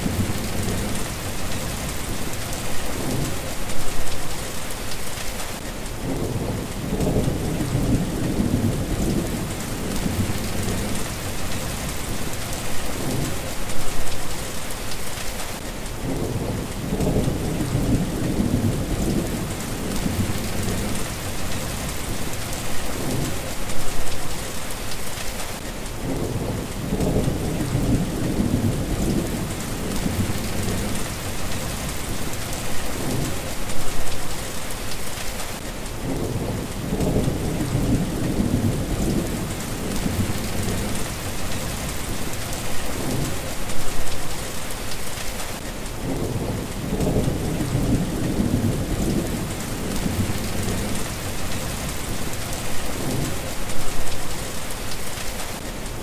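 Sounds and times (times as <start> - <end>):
low rolling thunder: 0.0 - 3.5, 6.0 - 12.4, 16.0 - 23.5, 26.0 - 33.9, 36.0 - 43.5, 46.0 - 54.2
steady rain falling: 0.0 - 56.0.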